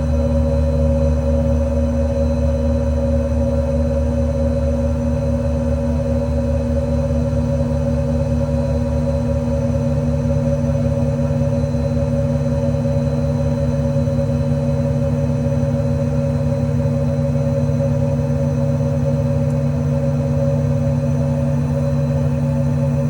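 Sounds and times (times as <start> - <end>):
diesel engine running: 0.0 - 6.1.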